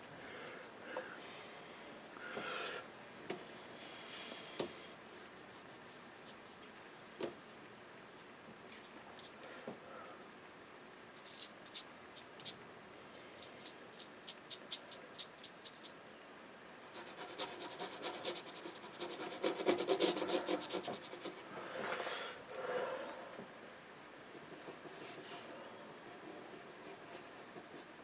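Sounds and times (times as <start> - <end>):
brush scratchy strokes on paper: 11.1 - 16.0, 16.9 - 22.3.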